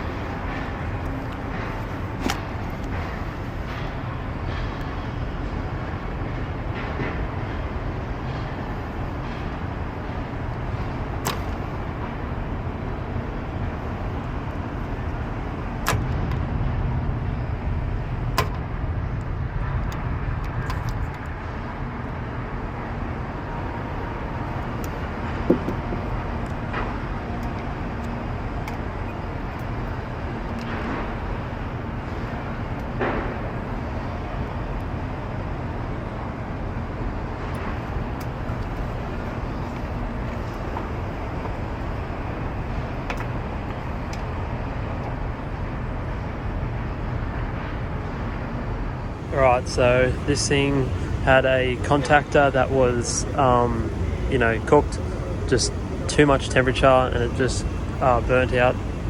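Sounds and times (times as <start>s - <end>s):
air conditioner rumble and hum: 0.0s - 59.0s
sharp clicks and knocks: 24.8s - 28.8s.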